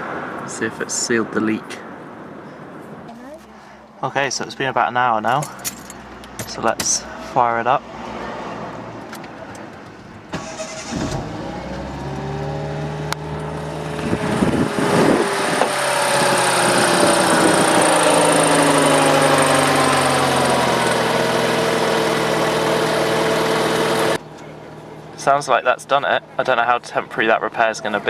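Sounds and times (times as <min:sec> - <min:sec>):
car engine starting and idling: 0:09.0 - 0:28.0.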